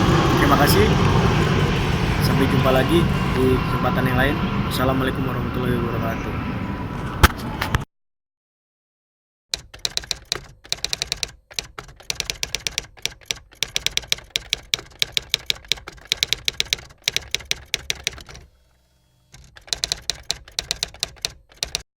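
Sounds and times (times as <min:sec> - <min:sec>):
rapid typing clicks: 0:09.5 - 0:18.5, 0:19.3 - 0:21.9.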